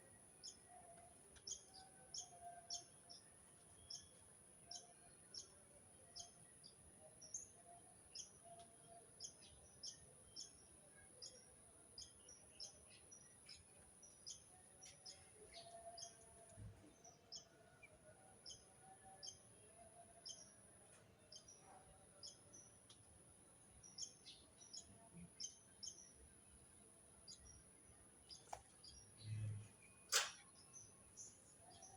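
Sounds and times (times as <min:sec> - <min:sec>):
faint bird chirps: 0:00.1 - 0:23.1.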